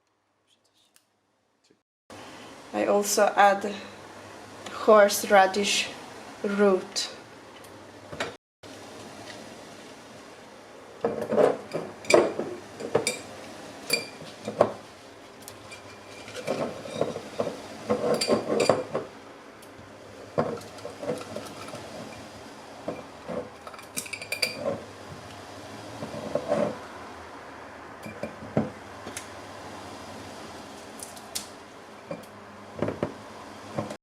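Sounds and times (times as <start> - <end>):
knocks and clinks against glass jar: 15.7 - 19.0.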